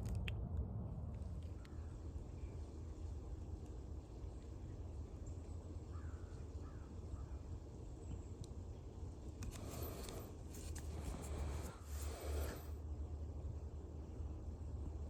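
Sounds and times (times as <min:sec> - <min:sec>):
low outdoor rumble: 0:00.0 - 0:15.0
faint bird calls: 0:05.9 - 0:07.5.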